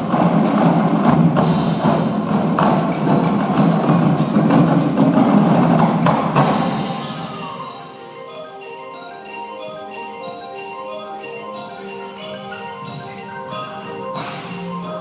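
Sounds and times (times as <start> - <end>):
drumline percussion: 0.0 - 15.0.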